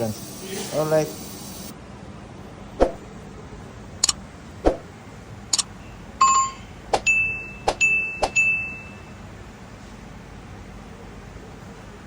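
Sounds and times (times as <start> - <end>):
short high electronic beeps: 6.2 - 9.0.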